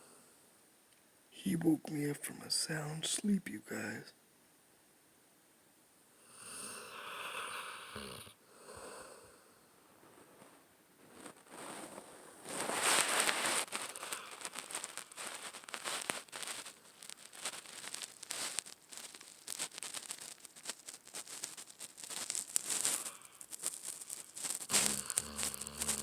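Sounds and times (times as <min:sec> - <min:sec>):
loud snoring: 0:06.3 - 0:08.4, 0:24.7 - 0:26.0.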